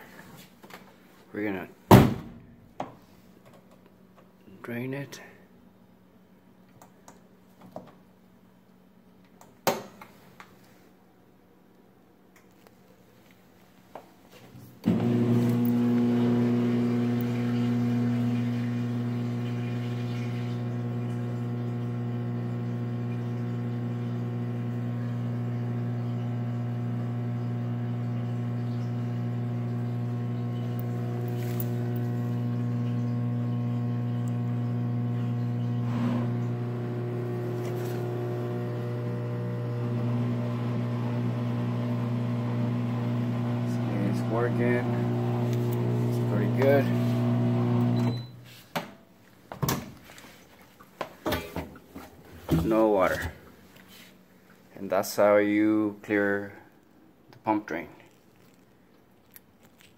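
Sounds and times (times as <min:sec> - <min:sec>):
drain pump humming: 0:14.8 - 0:48.4.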